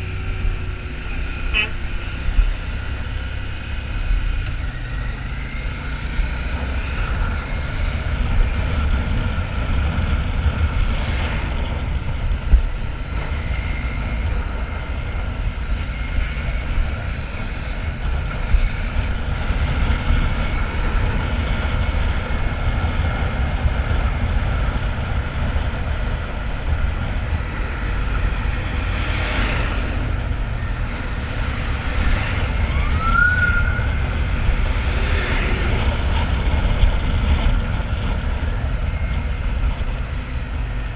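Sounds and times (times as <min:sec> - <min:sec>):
steady high whine: 0:00.0 - 0:40.9
wind noise on microphone: 0:00.0 - 0:40.9.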